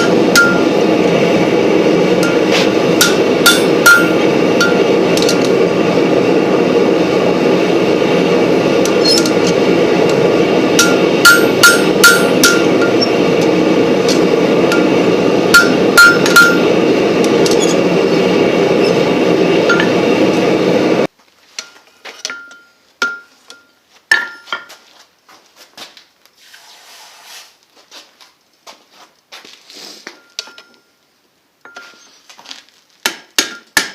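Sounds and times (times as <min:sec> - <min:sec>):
anvil ringing: 0:00.0 - 0:00.8, 0:02.2 - 0:05.3, 0:10.8 - 0:13.2, 0:15.5 - 0:16.7
hammer blows on hot steel: 0:00.0 - 0:05.6, 0:07.8 - 0:20.8
loud steady rushing noise: 0:00.0 - 0:21.1.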